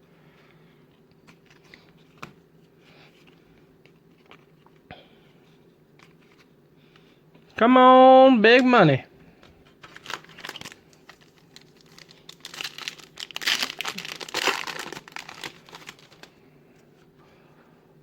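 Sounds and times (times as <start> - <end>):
wrapper crinkling: 9.8 - 16.4.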